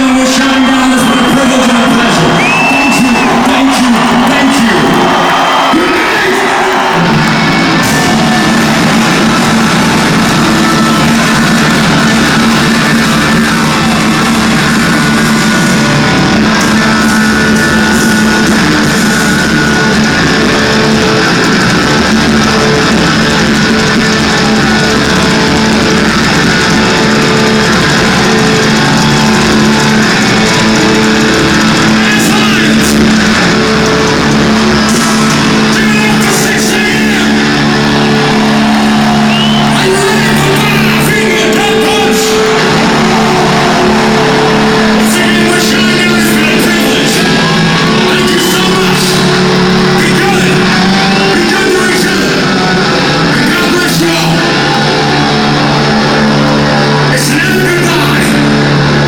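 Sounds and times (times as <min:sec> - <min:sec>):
heavy rock band playing: 0:00.0 - 0:59.0.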